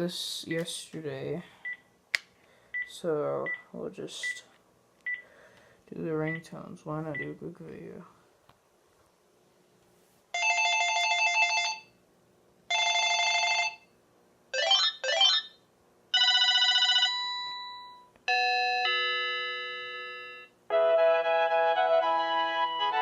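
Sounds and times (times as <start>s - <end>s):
electronic trilling phone ring: 12.7s - 13.9s, 14.6s - 15.6s, 16.2s - 20.5s.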